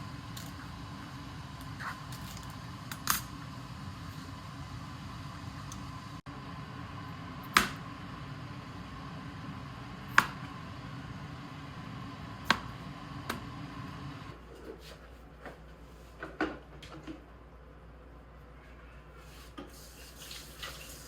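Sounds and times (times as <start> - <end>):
steady low hum: 0.0 - 14.4.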